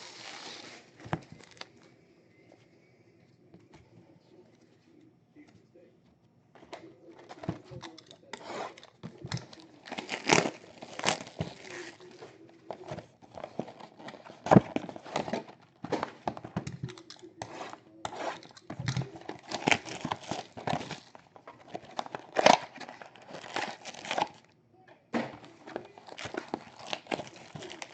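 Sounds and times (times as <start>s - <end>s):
wrappers tearing and crinkling: 0.0s - 1.8s, 7.6s - 24.5s, 25.5s - 27.9s
cards being handled: 0.0s - 2.0s, 6.6s - 24.4s, 25.2s - 27.9s.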